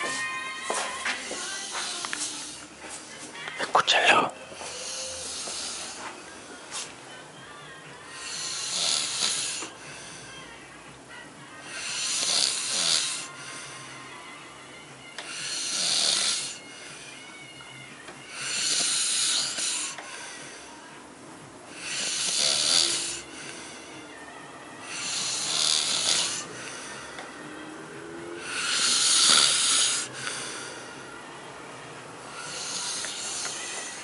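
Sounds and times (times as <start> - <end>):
quiet breathing: 1.3 - 7.0, 8.0 - 10.8, 11.5 - 14.4, 18.3 - 21.0, 21.7 - 27.6, 28.3 - 31.4
man snoring loudly: 4.6 - 6.0, 8.1 - 10.3, 11.6 - 14.0, 15.3 - 16.6, 18.3 - 20.7, 21.7 - 24.0, 24.8 - 30.9, 32.2 - 34.0.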